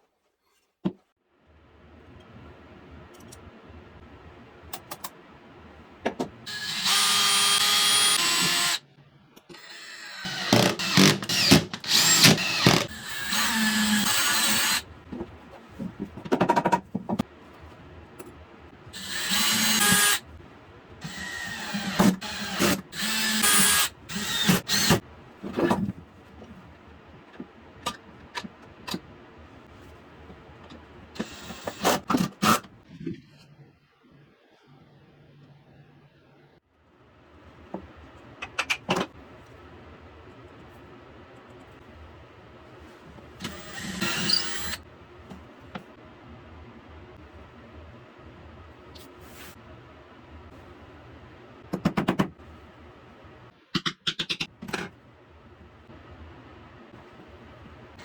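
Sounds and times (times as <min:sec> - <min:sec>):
power tool running: 0:06.5 - 0:08.8.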